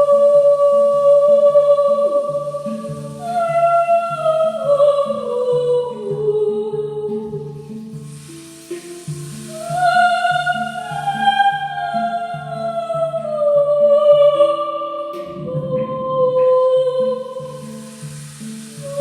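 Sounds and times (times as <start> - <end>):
woman singing wordlessly: 0.0 - 8.3, 9.0 - 19.0
low hand drum beat: 15.2 - 19.0.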